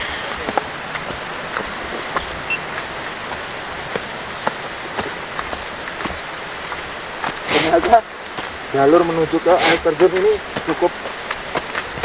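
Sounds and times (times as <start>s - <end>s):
running water hissing: 0.0s - 12.0s.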